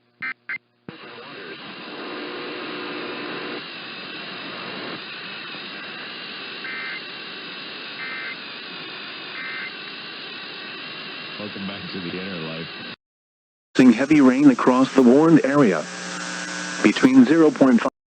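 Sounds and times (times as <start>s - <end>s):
radio static hiss: 0.2s - 13.0s, 13.8s - 18.0s.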